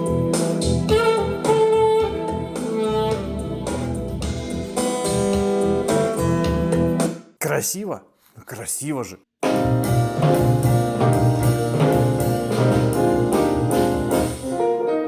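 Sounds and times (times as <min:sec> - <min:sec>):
saxophone long notes: 0:00.0 - 0:04.5.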